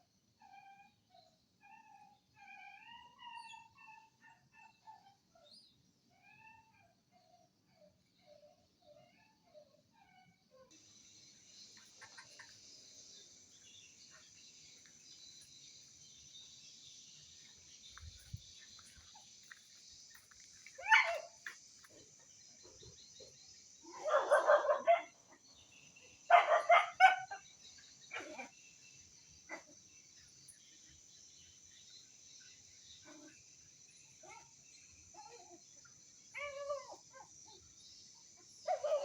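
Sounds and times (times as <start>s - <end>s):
dog barking: 20.8s - 21.4s, 23.9s - 25.2s, 26.3s - 27.4s.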